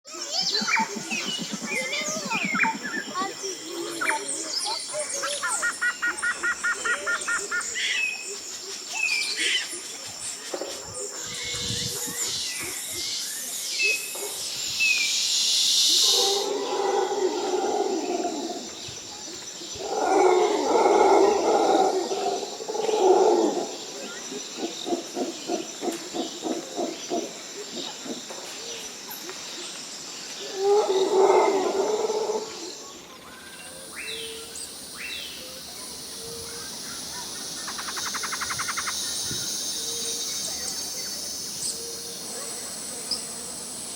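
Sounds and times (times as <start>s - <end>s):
harsh bird calls: 0.1s - 8.3s, 33.2s - 43.3s
high-pitched insect drone: 0.1s - 13.8s, 33.0s - 43.9s
fast bird trill: 0.3s - 3.4s.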